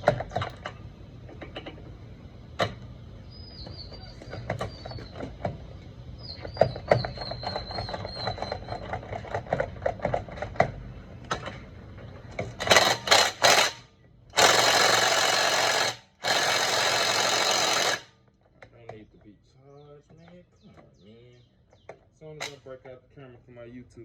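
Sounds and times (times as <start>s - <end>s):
impact wrench hammering: 12.6s - 13.8s, 14.4s - 18.1s
hand ratchet clicking: 12.6s - 18.1s.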